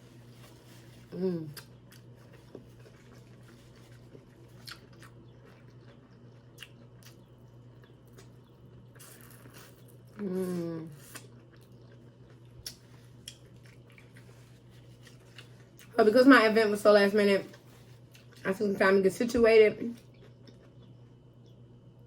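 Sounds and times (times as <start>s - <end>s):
soft chewing: 0.0s - 16.0s, 17.4s - 18.5s, 19.9s - 22.0s.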